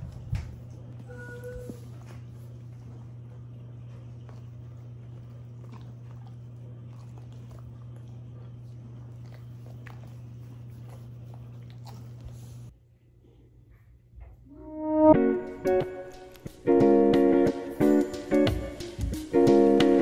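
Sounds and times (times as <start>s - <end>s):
dog chewing: 0.0s - 12.7s
steady low hum: 0.0s - 14.6s.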